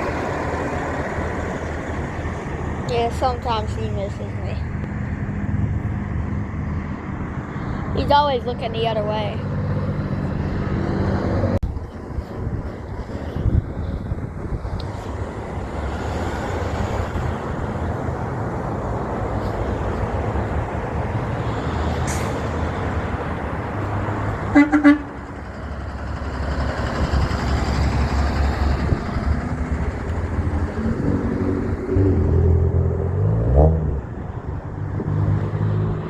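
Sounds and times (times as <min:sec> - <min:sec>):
heavy trucks passing: 0:00.0 - 0:36.0
truck horn toots: 0:24.5 - 0:25.2.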